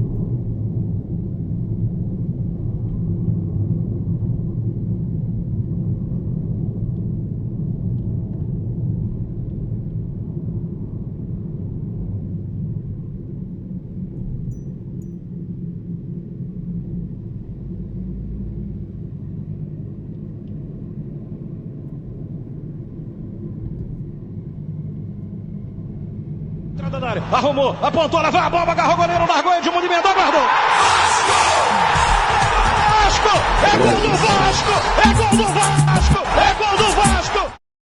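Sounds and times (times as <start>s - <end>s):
car engine and road noise: 0.0s - 29.1s.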